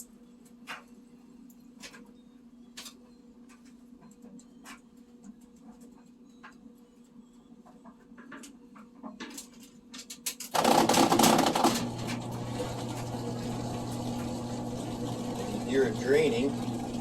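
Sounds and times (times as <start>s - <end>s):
washing machine humming: 10.5s - 17.0s.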